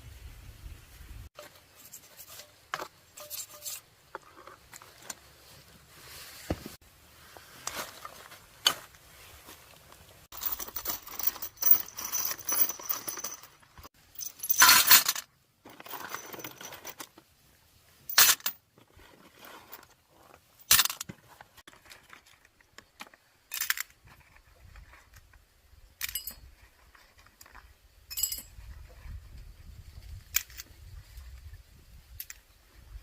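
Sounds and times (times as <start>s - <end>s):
metal tools clinking: 1.4s - 5.2s, 10.3s - 17.2s, 18.1s - 20.0s, 20.6s - 21.1s, 26.0s - 28.6s.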